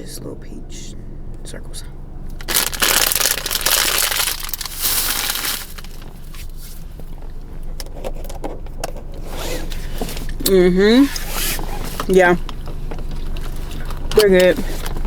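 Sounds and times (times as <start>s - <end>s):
steady low hum: 0.0s - 15.0s
plastic bag crinkling: 2.4s - 6.6s.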